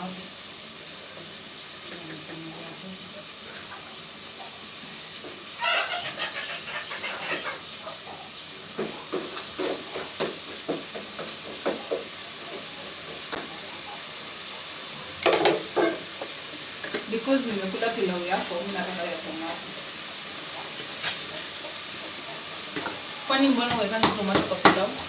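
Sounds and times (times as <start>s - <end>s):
food sizzling in a pot: 0.0s - 25.0s
utensil knocking against pot: 23.7s - 25.0s.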